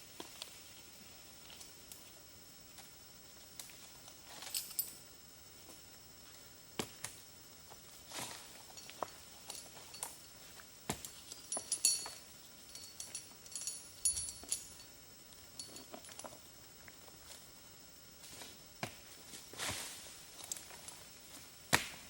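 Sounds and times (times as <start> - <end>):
metallic jingling: 11.0 - 14.9.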